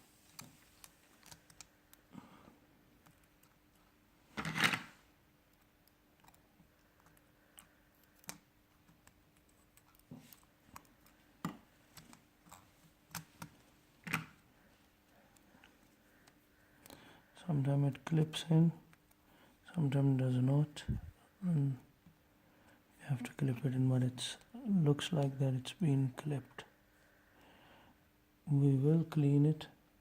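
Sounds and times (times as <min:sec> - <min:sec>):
faint steady hum: 0:00.0 - 0:30.0.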